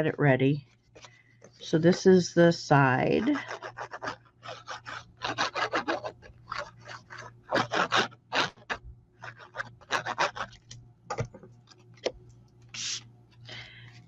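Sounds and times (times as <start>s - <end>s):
adhesive scraping on card: 3.2s - 10.7s, 12.8s - 13.0s.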